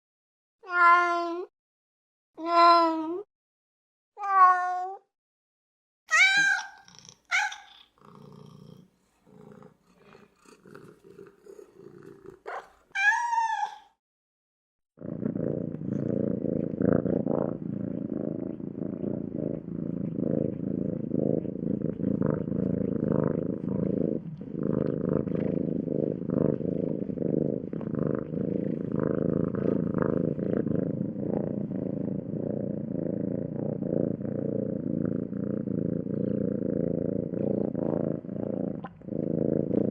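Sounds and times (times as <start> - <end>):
cat meowing: 0.6 - 1.5, 4.2 - 5.0, 6.1 - 7.9, 12.5 - 14.0
cat purring: 6.4 - 13.0, 15.0 - 39.9.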